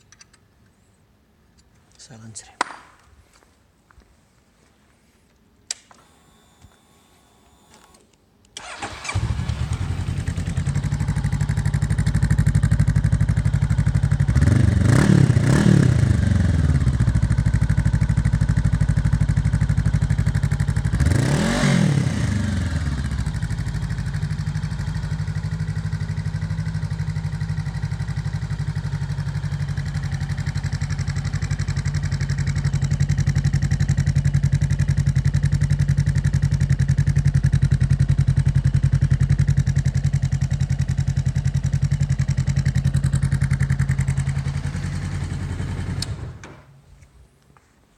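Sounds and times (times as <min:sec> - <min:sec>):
motorcycle engine idling: 0:08.6 - 0:21.3, 0:22.3 - 0:46.5
motorcycle engine revving: 0:08.6 - 0:46.6
motorcycle engine starting: 0:08.6 - 0:46.9.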